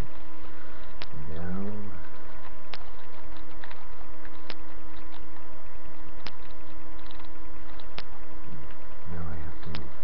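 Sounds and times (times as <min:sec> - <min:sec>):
electrical hum and hiss: 0:00.0 - 0:10.0
puzzle cube layers clicking: 0:02.4 - 0:08.8.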